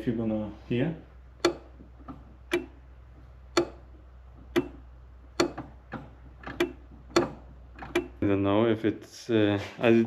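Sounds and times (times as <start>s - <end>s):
wiper motor clicking: 4.4s - 8.2s.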